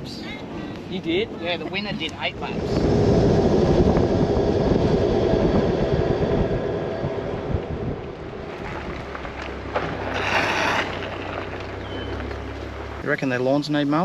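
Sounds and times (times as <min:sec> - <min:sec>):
road rumble: 0:00.0 - 0:14.0
vehicle engine running: 0:02.8 - 0:13.9.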